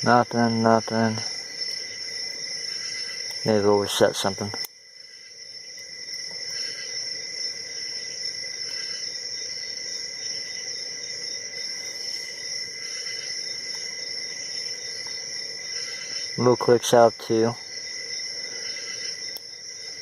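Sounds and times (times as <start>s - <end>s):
crickets trilling: 0.0s - 20.0s.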